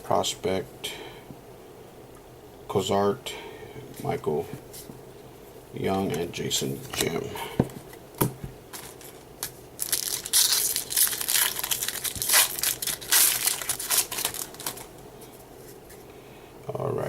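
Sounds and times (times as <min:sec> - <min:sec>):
foil wrapper crinkling: 0:08.7 - 0:15.0.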